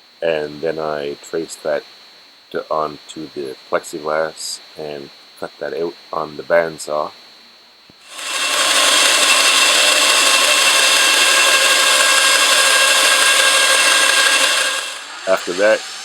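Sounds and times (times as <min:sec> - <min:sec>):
bandsaw cutting plastic: 0:08.0 - 0:16.0.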